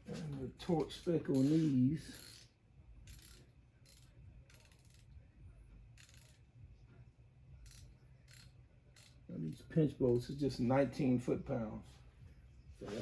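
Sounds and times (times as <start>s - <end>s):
faint hissy handling scrapes: 12.8s - 13.0s.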